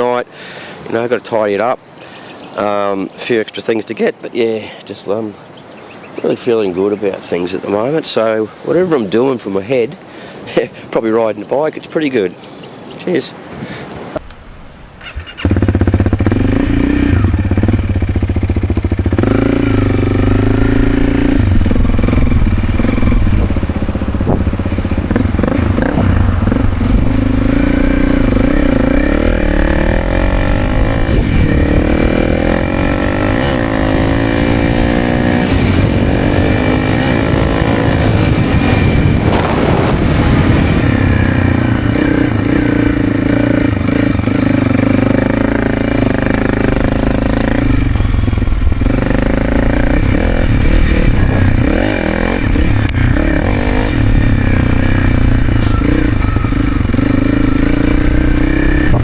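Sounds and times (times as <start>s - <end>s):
motorcycle engine running: 15.4s - 59.0s.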